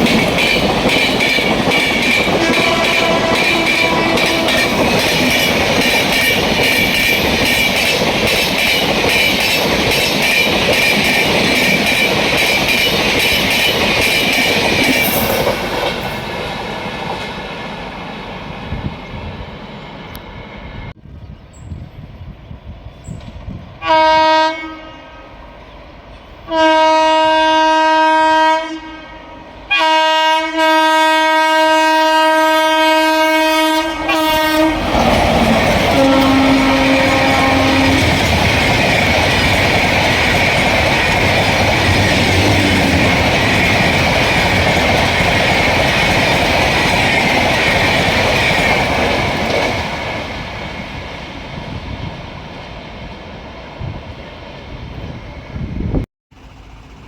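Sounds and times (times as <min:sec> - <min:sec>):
train rushing past: 0:00.0 - 0:21.0, 0:25.3 - 0:57.0
train horn blasts: 0:02.0 - 0:05.6, 0:23.8 - 0:25.4, 0:26.4 - 0:38.4.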